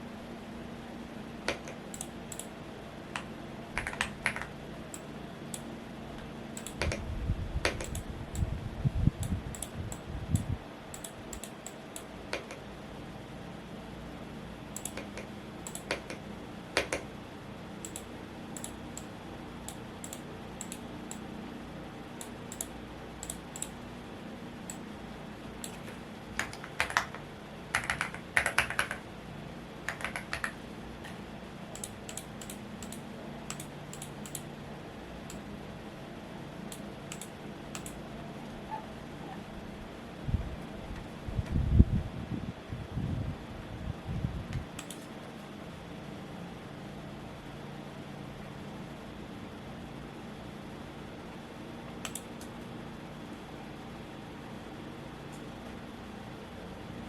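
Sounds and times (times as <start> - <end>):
steady fan noise: 0.0 - 57.0
mechanical keyboard typing: 3.2 - 4.6, 6.6 - 7.0, 7.6 - 8.5, 11.0 - 12.6, 14.8 - 16.2, 17.8 - 19.1, 25.6 - 29.1, 29.8 - 30.6.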